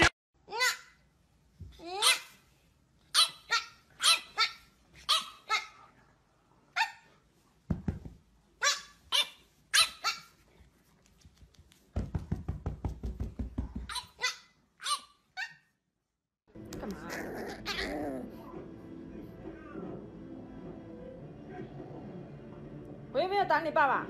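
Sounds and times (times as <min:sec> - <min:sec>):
dog barking high-pitched: 0:03.1 - 0:05.8, 0:08.6 - 0:10.4, 0:13.9 - 0:15.6.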